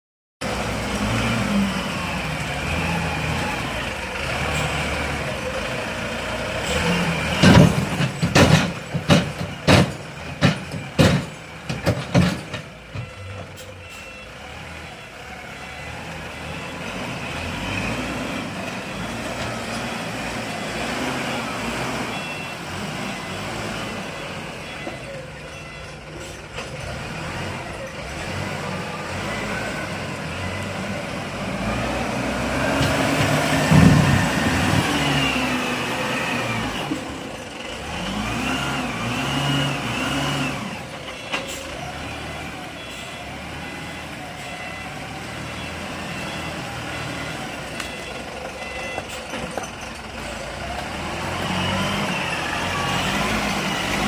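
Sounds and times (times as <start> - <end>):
loud bangs and knocks: 7.3 - 13.2.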